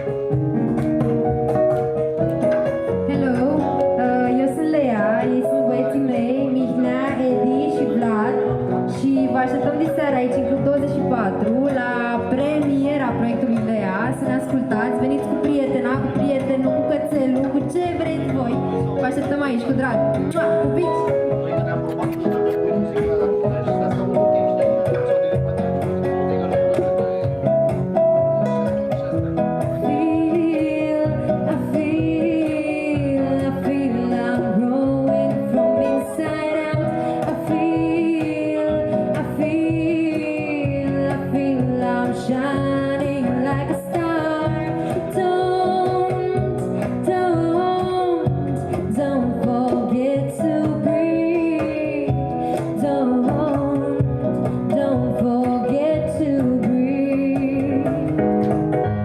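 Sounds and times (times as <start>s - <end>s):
guitar: 0.0s - 59.0s
pop song played by a band: 0.0s - 59.0s
woman singing: 3.0s - 21.2s, 29.8s - 58.5s.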